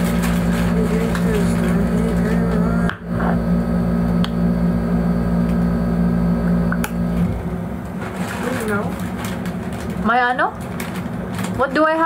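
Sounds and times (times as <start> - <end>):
low hum with whir: 0.0 - 12.0.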